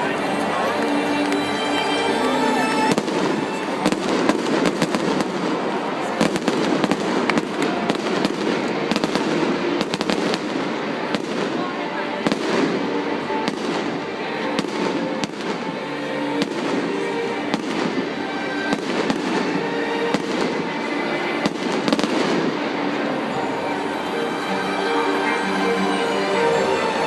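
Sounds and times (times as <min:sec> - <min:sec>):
fireworks crackling: 0:00.0 - 0:25.4
music playing: 0:00.0 - 0:27.0
fireworks bursting with bangs: 0:02.1 - 0:23.4.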